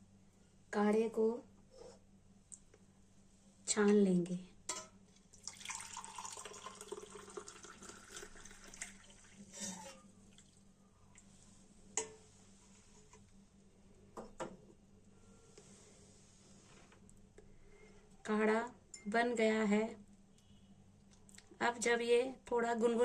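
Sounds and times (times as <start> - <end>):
drips: 5.3 - 11.2
liquid trickling through a strainer: 5.3 - 11.2.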